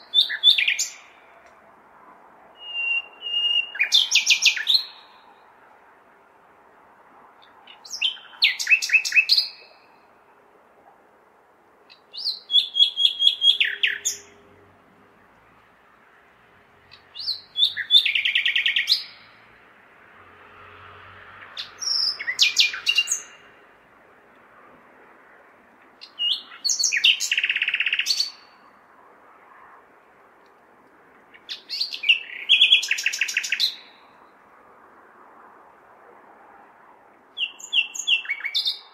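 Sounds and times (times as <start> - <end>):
nightingale singing: 0.0 - 1.4, 2.6 - 5.5, 7.4 - 10.3, 11.9 - 14.5, 16.9 - 19.3, 21.6 - 23.5, 26.0 - 28.8, 31.3 - 34.2, 37.4 - 38.9
faint city hum: 0.0 - 38.9.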